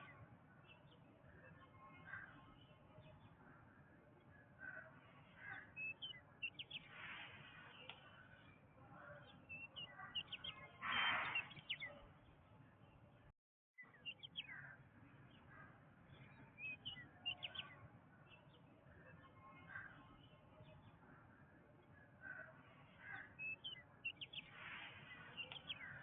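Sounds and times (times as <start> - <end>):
birds chirping and calling: 4.2 - 12.1, 13.8 - 21.0, 22.0 - 26.0.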